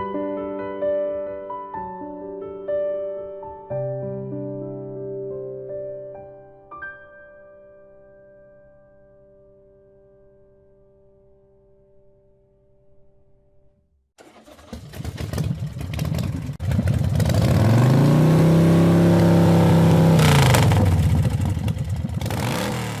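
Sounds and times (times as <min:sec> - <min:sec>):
motorcycle engine revving: 0:14.2 - 0:23.0.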